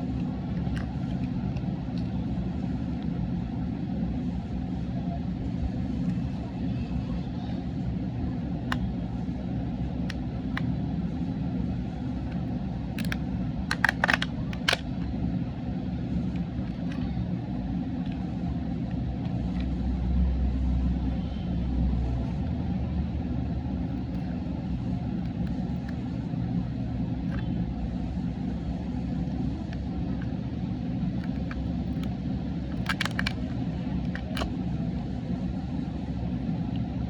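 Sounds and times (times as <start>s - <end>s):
sharp clicks: 13.0s - 14.8s, 32.8s - 33.4s.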